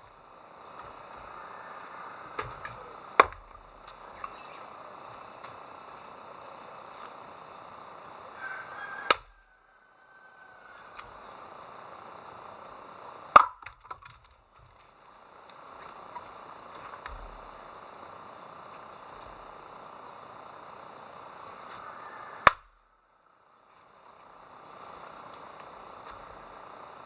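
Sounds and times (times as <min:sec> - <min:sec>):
insects chirring: 0:00.0 - 0:27.0
axe splitting firewood: 0:02.4 - 0:04.3.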